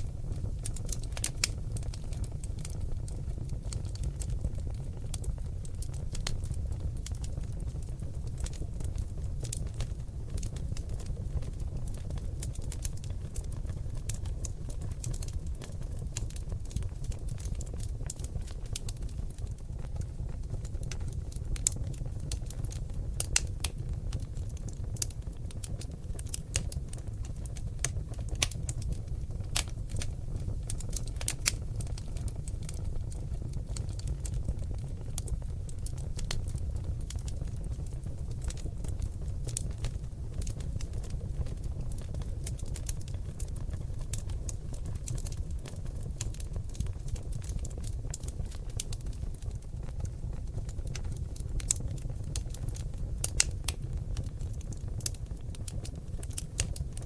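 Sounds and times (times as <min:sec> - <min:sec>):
log fire crackling: 0:00.0 - 0:57.0
low rumble of flames: 0:00.0 - 0:57.0.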